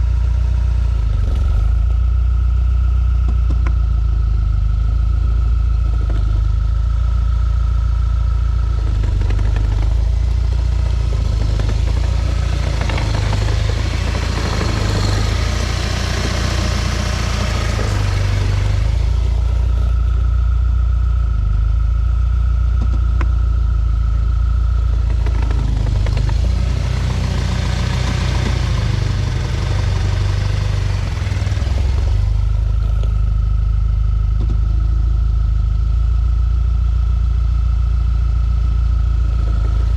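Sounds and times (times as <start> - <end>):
car engine running: 0.0 - 39.9
loud gearbox rattle: 8.8 - 20.1, 25.0 - 33.2.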